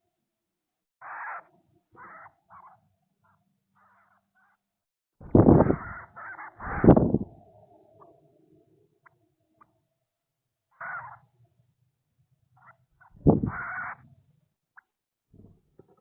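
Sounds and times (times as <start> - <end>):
harsh rasping bird calls: 1.0 - 4.6, 5.2 - 7.2, 10.7 - 11.3, 12.6 - 14.0.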